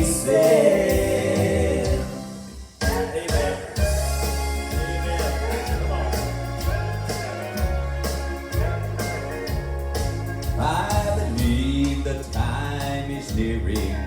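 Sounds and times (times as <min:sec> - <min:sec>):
gospel instrumental with bass and beat: 0:00.0 - 0:14.0.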